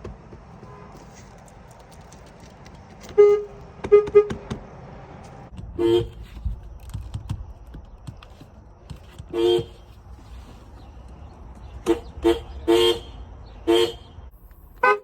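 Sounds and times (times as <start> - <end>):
car horns honking: 3.0 - 4.6, 5.6 - 6.2, 9.3 - 9.9, 11.8 - 15.0.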